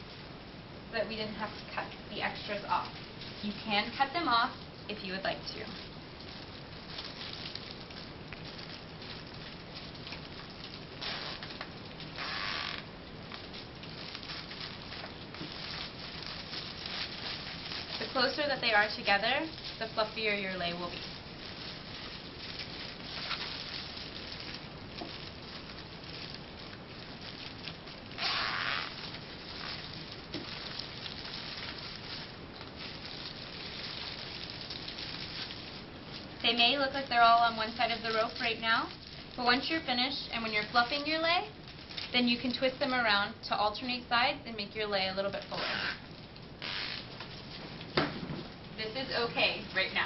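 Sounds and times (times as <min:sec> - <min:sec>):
plastic bags rustling: 0:01.0 - 0:50.0
zip ties ratcheting: 0:12.2 - 0:12.9, 0:28.2 - 0:29.0, 0:46.6 - 0:47.1.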